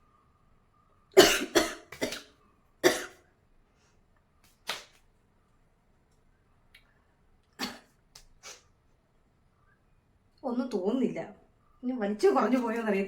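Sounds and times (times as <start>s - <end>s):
woman sniffing snuff: 8.4s - 8.7s.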